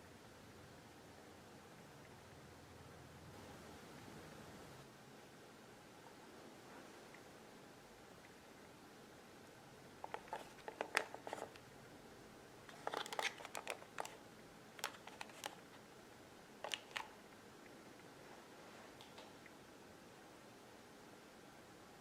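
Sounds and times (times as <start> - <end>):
faint steady hiss: 0.0 - 22.0
small sharp clicks and crinkling: 10.0 - 11.7, 12.7 - 15.9, 16.6 - 17.8, 19.0 - 19.6.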